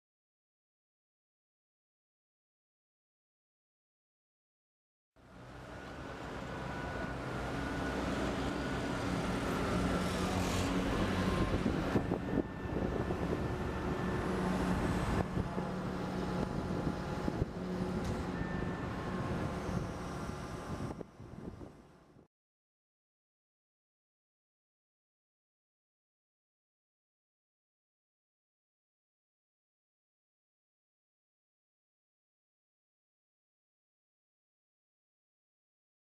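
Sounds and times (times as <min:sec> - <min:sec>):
heavy vehicle engines running: 0:05.2 - 0:22.2
traffic noise: 0:05.2 - 0:22.2.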